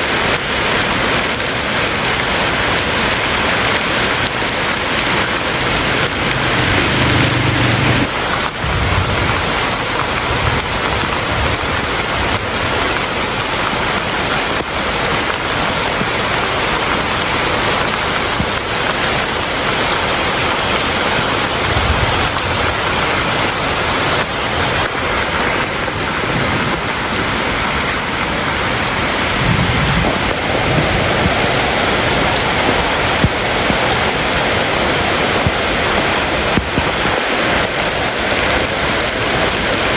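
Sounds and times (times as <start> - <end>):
heavy rain hissing: 0.0 - 39.9
low rumbles: 4.4 - 12.4.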